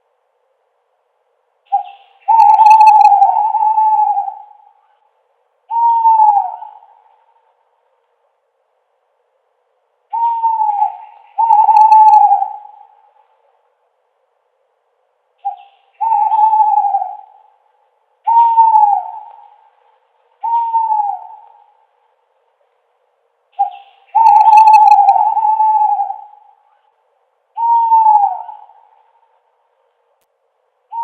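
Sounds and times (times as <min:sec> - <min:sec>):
owl hooting: 0:01.7 - 0:05.1, 0:05.7 - 0:07.6, 0:10.1 - 0:13.6, 0:15.4 - 0:22.2, 0:23.5 - 0:29.4.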